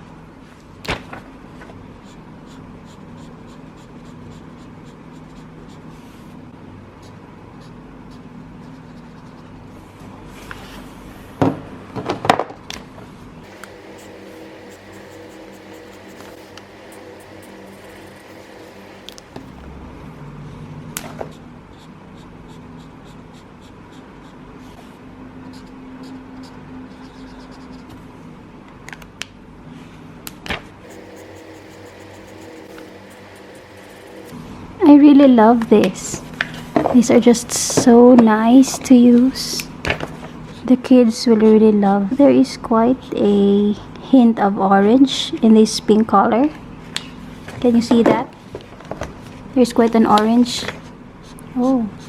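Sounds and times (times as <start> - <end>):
steady low hum: 0.0 - 52.0
felt-tip pen scratching on paper: 2.0 - 6.0, 7.6 - 9.7, 13.8 - 18.8, 21.2 - 24.4, 25.4 - 27.9, 30.9 - 34.3
low hum: 13.1 - 21.8, 30.8 - 38.1.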